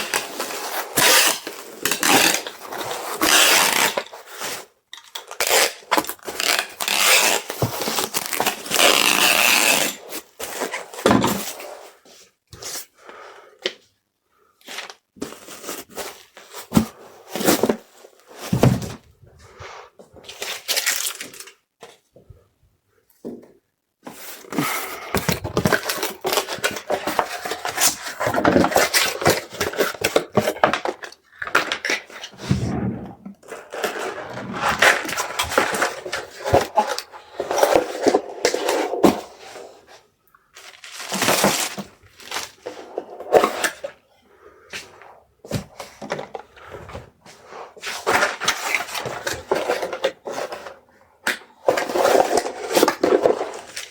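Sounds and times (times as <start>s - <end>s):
packaging rustling and scraping: 24.0s - 44.0s, 45.6s - 50.8s, 51.6s - 53.9s.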